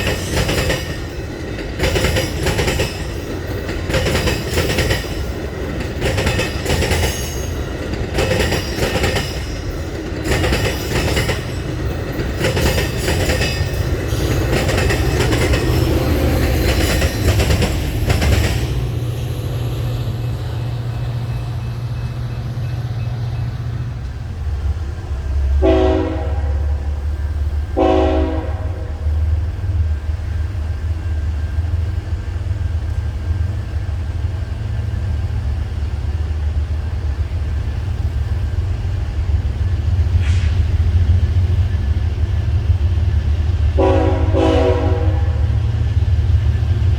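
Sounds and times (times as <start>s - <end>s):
train wheels clattering over joints: 0.0s - 19.2s
low locomotive rumble: 0.0s - 46.9s
locomotive air horn blasts: 25.5s - 27.1s, 27.7s - 29.3s, 43.8s - 45.7s.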